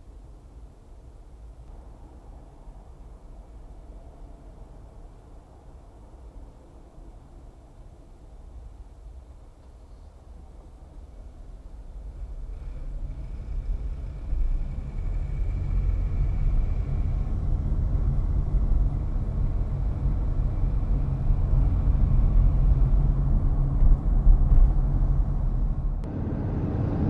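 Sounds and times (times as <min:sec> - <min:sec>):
car engine and road rumble: 0:11.4 - 0:27.0.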